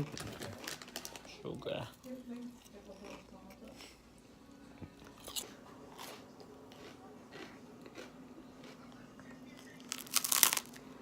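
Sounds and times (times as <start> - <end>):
faint steady hum: 0.0 - 11.0
chewing crunchy snack: 2.6 - 4.0, 5.1 - 8.9, 9.8 - 10.8.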